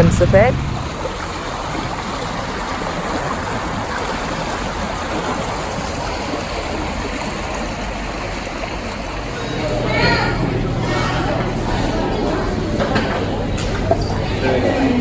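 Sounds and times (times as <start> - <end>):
stream flowing over rocks: 0.0 - 9.6.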